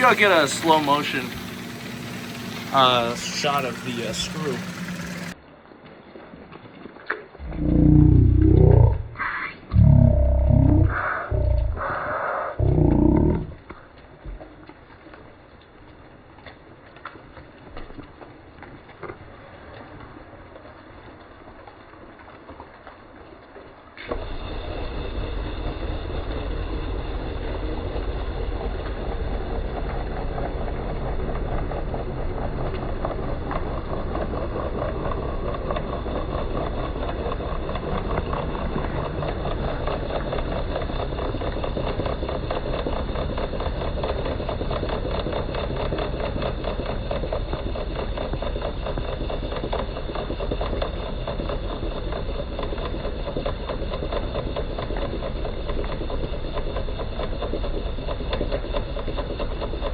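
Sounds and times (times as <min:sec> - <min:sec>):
fast even rattle: 0:00.0 - 0:05.4, 0:25.7 - 0:59.9
garage door opener motor humming: 0:00.0 - 0:05.4.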